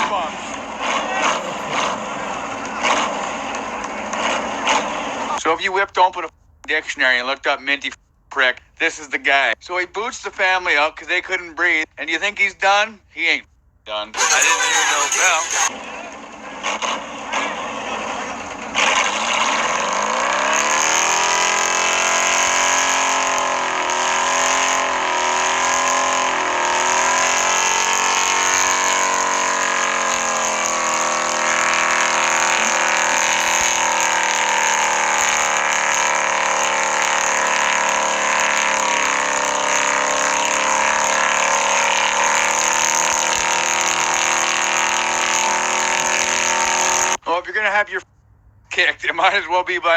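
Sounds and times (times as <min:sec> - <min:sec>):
truck engine revving: 0:00.0 - 0:06.8, 0:14.2 - 0:47.2.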